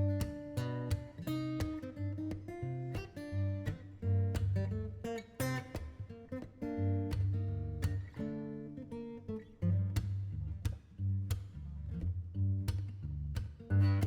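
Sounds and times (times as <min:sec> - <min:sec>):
acoustic guitar strumming: 0:00.0 - 0:10.0.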